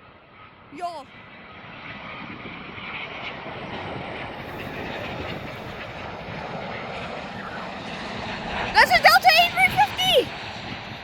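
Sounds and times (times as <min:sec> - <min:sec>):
jet engines roaring: 0:03.4 - 0:10.3.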